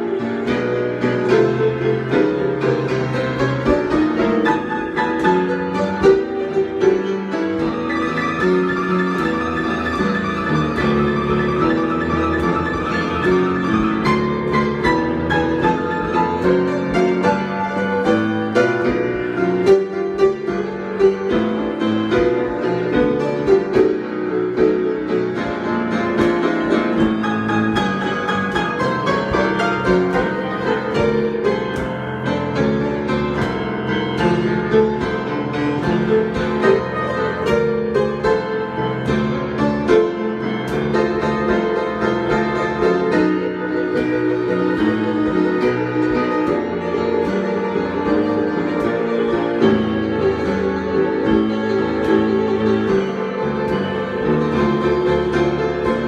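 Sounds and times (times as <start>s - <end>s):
improvised piano playing: 0.0s - 56.0s.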